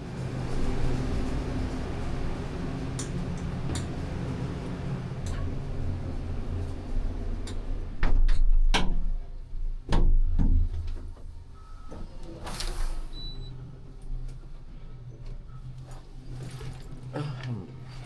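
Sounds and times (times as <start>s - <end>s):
crane machinery humming: 0.0s - 8.0s.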